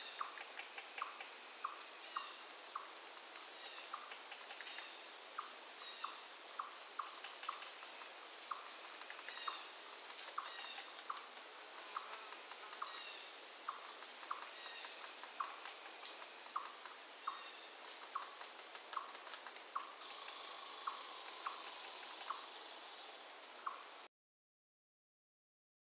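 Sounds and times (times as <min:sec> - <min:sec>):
crickets chirping: 0:00.0 - 0:24.1.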